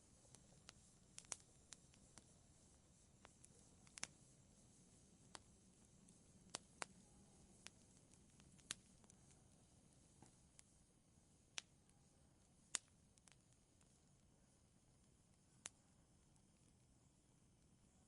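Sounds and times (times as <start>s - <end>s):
wood fire crackling: 0.0s - 17.8s
faint low hiss: 0.0s - 18.0s.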